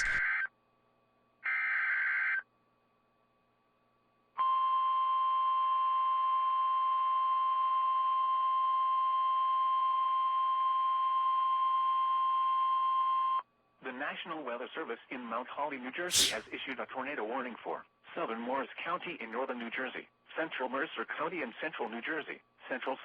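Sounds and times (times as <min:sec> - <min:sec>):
screeching digital data burst: 0:00.0 - 0:00.3.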